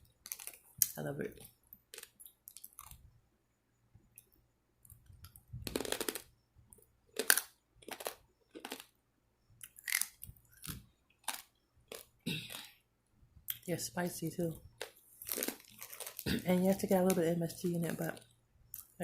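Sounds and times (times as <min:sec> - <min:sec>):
crunchy chewing: 0:00.0 - 0:03.0, 0:04.2 - 0:09.0, 0:09.6 - 0:12.8, 0:14.6 - 0:16.9.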